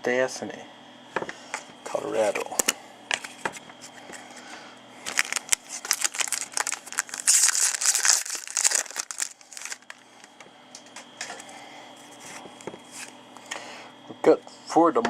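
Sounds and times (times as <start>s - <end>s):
cards being handled: 1.6s - 10.3s, 12.1s - 13.2s
foil wrapper crinkling and tearing: 5.0s - 10.3s.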